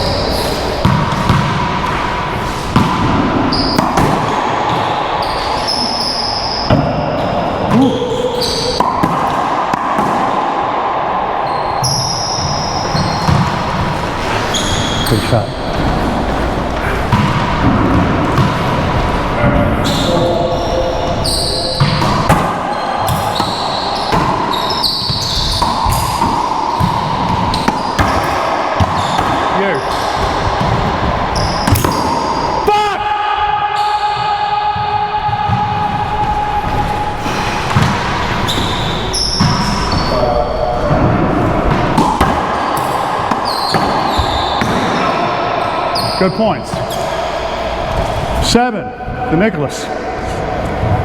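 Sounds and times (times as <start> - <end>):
steady background hum: 0.0 - 24.8
racquetball cracking off walls: 0.8 - 5.0, 21.8 - 32.5, 40.8 - 45.4.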